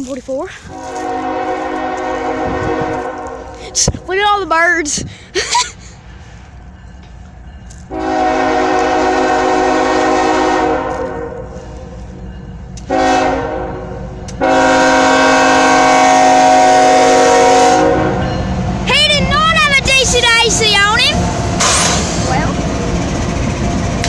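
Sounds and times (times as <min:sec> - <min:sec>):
low rumble of train: 0:00.0 - 0:24.0
locomotive air horn blasts: 0:00.7 - 0:03.7, 0:07.9 - 0:11.5, 0:12.9 - 0:18.3.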